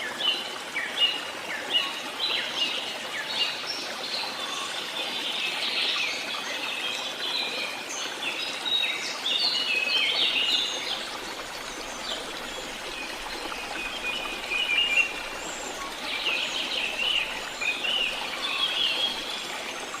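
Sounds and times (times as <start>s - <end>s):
running water: 0.0s - 20.0s
birds chirping and trilling: 9.5s - 20.0s.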